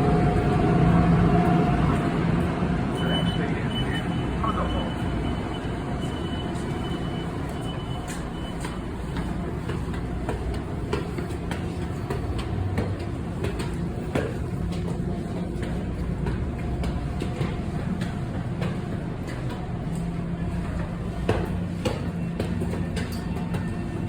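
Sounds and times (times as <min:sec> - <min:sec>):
train rumbling: 0:00.0 - 0:24.0
high beeping tone: 0:02.9 - 0:08.6.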